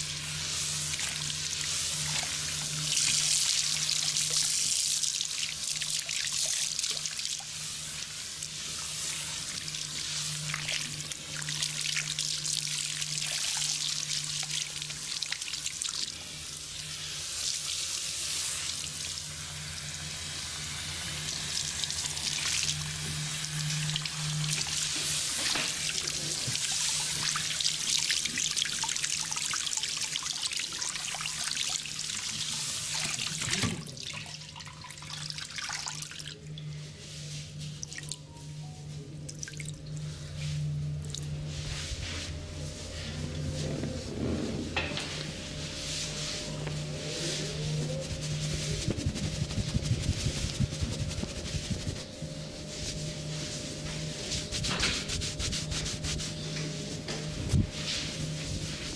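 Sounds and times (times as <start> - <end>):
steady low hum: 36.3 - 58.9.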